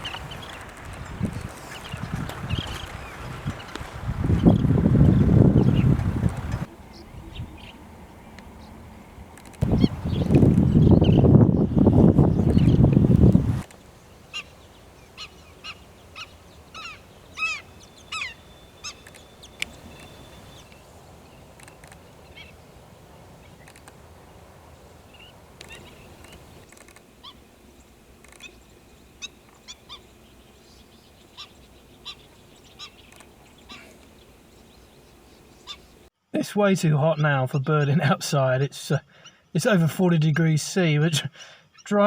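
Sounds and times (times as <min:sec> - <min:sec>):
wind rumble: 0:00.0 - 0:26.9
bird calls short and sharp: 0:13.6 - 0:20.9.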